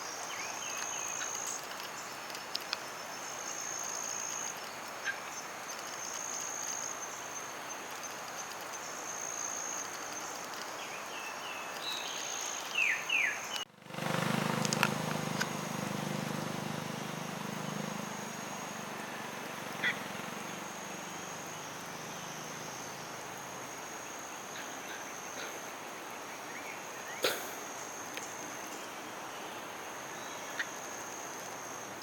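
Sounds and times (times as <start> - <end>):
bird chirps: 0.0 - 13.7
high thin insect trill: 0.0 - 25.8.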